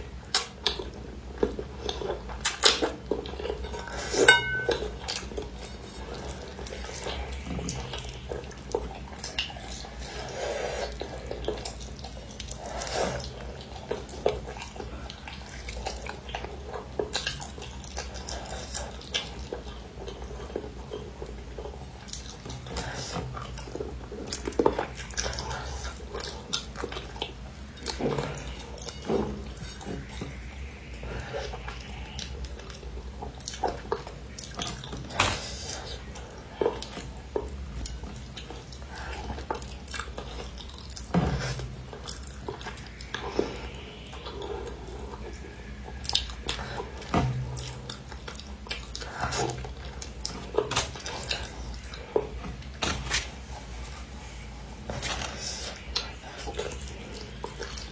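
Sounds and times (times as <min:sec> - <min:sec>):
person chewing wetly: 0:00.1 - 0:57.9
steady low hum: 0:03.0 - 0:16.8, 0:23.4 - 0:57.9
utensils clicking on dish: 0:04.2 - 0:04.9.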